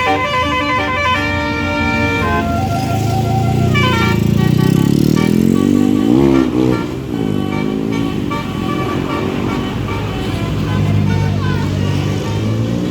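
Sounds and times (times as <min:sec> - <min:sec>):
bus engine running: 0:00.0 - 0:12.9
musical bus air horn: 0:00.0 - 0:12.9.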